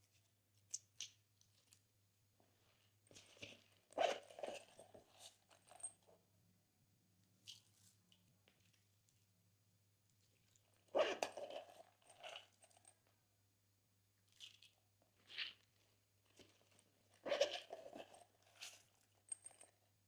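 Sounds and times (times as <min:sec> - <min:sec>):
slime squishing with clicks and crackles: 0:00.0 - 0:02.3, 0:07.1 - 0:20.0.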